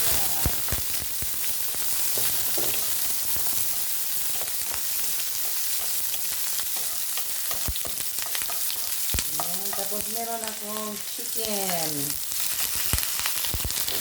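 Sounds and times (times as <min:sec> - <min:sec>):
hot oil sizzling in a pan: 0:00.0 - 0:14.0
spatula clicking against pan: 0:05.4 - 0:10.6.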